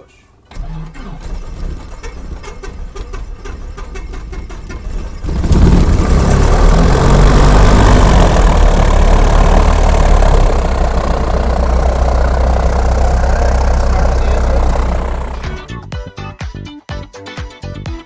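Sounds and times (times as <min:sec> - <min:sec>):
light aircraft propeller drone: 0:05.9 - 0:15.7.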